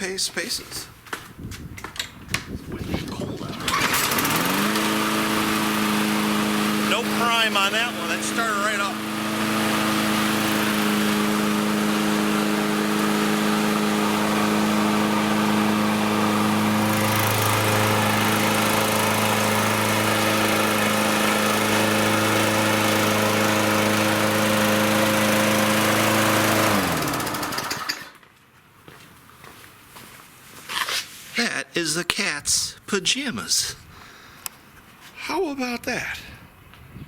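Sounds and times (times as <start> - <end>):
lawn mower engine running: 3.4 - 28.2.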